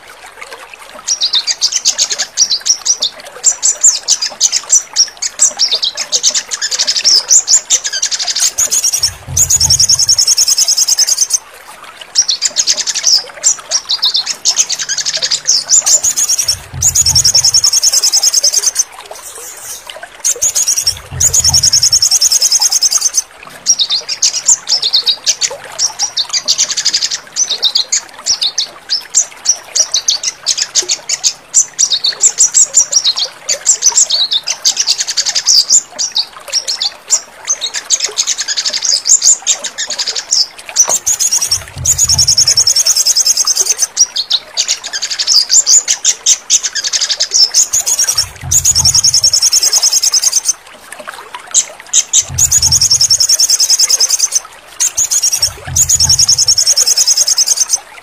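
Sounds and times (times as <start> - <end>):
bird singing high-pitched trills: 8.0 - 11.4, 14.9 - 23.2, 41.0 - 43.9, 47.6 - 50.5, 52.1 - 57.8
low rumbles: 9.0 - 10.2, 16.4 - 17.7, 20.8 - 22.0, 41.5 - 42.6, 48.1 - 49.2, 52.2 - 53.2, 55.4 - 56.4.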